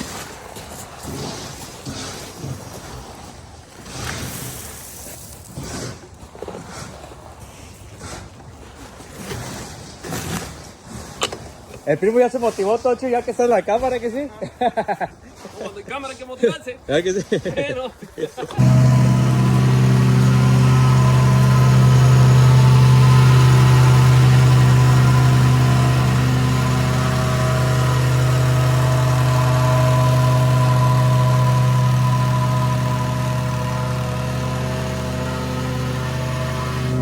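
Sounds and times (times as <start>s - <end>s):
engine running steadily: 18.6s - 37.0s.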